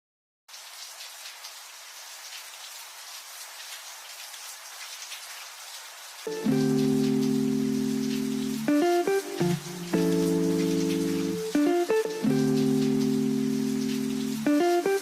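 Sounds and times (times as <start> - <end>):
rain hiss and patter: 0.5 - 15.0
background music with guitar: 6.3 - 15.0.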